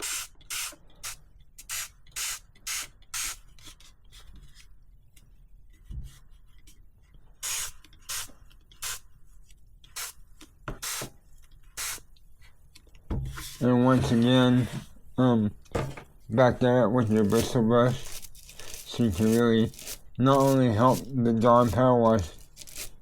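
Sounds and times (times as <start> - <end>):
spray bottle squirting: 0.0 - 3.4, 7.4 - 9.1.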